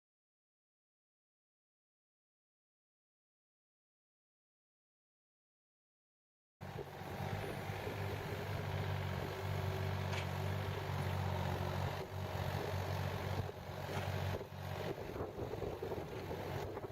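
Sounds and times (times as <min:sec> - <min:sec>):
diesel engine running: 0:06.6 - 0:16.9.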